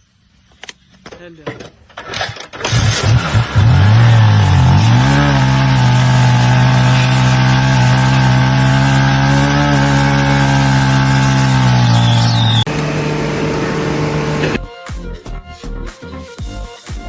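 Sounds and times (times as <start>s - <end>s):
motor engine running at high speed: 3.4s - 14.6s.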